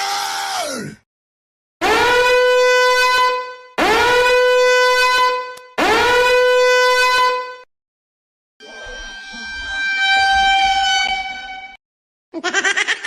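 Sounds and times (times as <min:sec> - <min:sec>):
long horn-like blasts: 0:01.8 - 0:07.7, 0:08.6 - 0:11.8
sound sliding down in pitch: 0:08.6 - 0:11.8.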